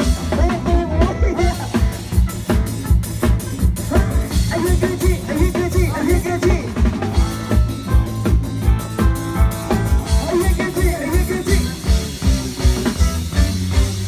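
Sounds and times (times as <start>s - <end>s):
loud live band music: 0.0s - 14.0s
heavy kick drum beating: 1.4s - 14.0s.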